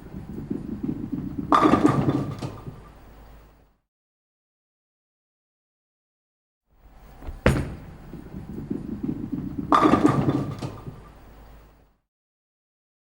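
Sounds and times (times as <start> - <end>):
quick knocks: 7.0 - 8.6.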